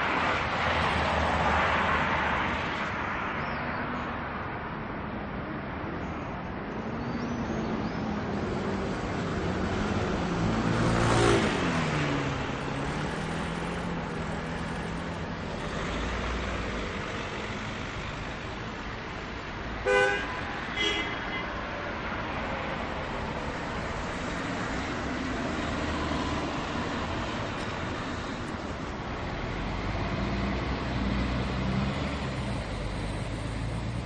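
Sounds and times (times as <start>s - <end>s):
road traffic noise: 0.0s - 34.0s
vehicle passing loudly: 8.5s - 17.9s
car horn toots: 19.8s - 21.5s.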